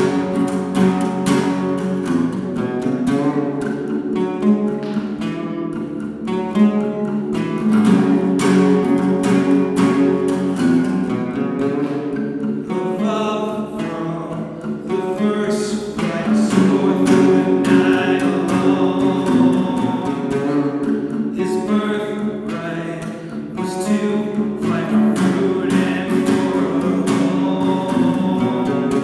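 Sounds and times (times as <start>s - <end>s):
acoustic guitar strumming: 0.0s - 29.0s.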